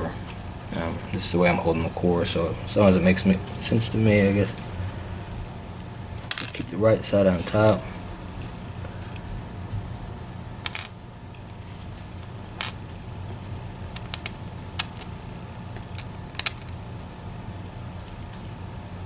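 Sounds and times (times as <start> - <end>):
steady low hum: 0.0 - 19.0
metal lock parts clicking: 6.2 - 6.8, 10.6 - 11.6, 12.6 - 12.8, 13.9 - 15.2, 15.8 - 16.8.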